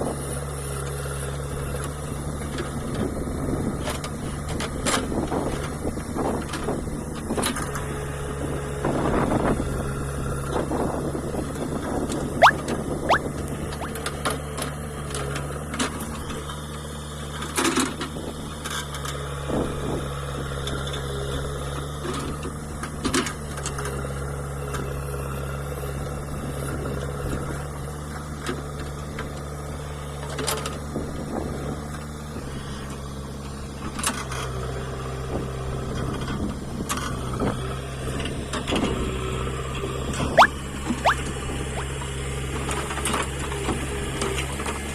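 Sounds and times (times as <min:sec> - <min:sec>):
short rising squeak: 0:40.4 - 0:41.2.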